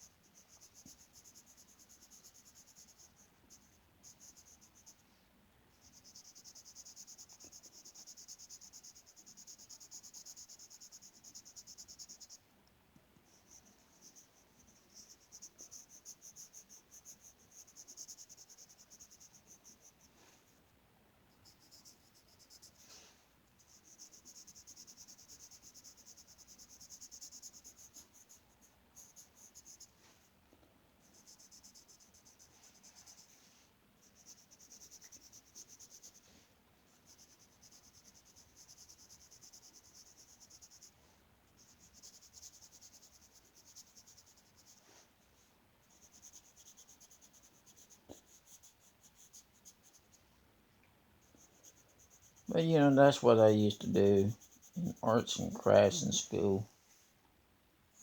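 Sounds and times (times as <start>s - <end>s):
colouring tool scratching on paper: 5.8s - 12.4s, 13.3s - 20.1s, 21.4s - 23.0s, 23.6s - 30.0s, 31.0s - 33.4s, 34.0s - 45.0s, 45.8s - 50.2s, 51.2s - 56.6s.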